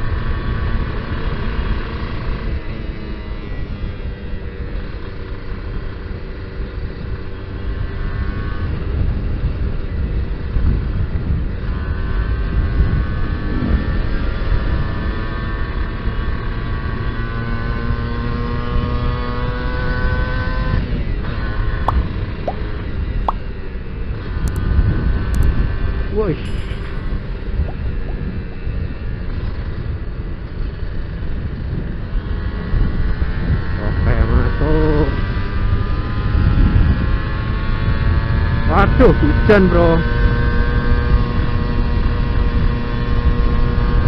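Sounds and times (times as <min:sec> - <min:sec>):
low wind rumble: 0:06.8 - 0:15.6, 0:20.7 - 0:34.0.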